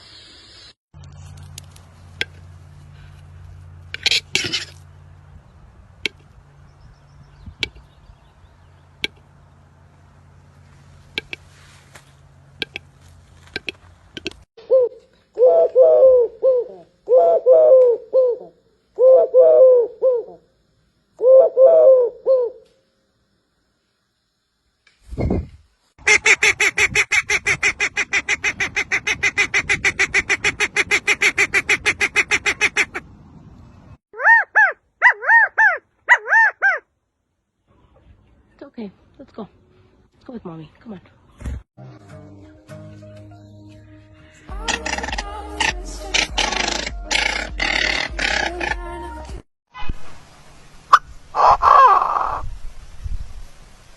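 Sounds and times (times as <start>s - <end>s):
sharp clicks or taps: 9.0s - 9.2s, 11.2s - 11.4s
bird cooing call: 14.6s - 20.5s, 21.2s - 22.6s, 44.6s - 48.8s.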